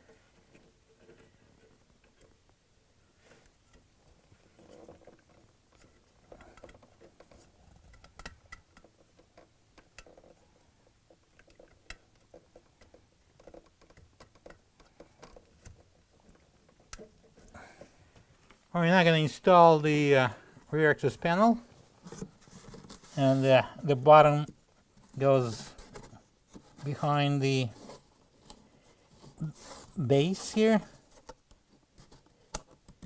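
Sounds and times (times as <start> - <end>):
small clicks and rustles of hands: 3.4 - 18.7, 30.6 - 33.0.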